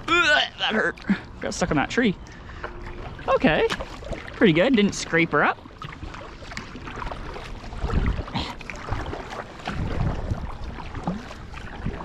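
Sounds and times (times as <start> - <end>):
paddle strokes moving water: 0.0 - 12.0.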